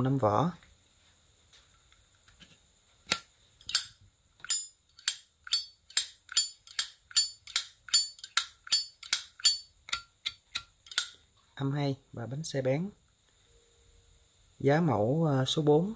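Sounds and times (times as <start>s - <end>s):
lighter lid clicking open and shut: 3.1s - 11.1s.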